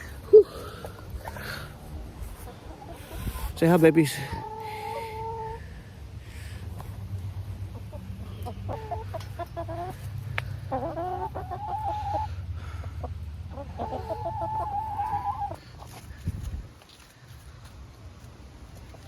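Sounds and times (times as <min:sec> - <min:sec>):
steady low rumble: 0:00.0 - 0:10.8
drawn-out hen calls: 0:00.0 - 0:16.7
hens clucking: 0:00.0 - 0:17.0.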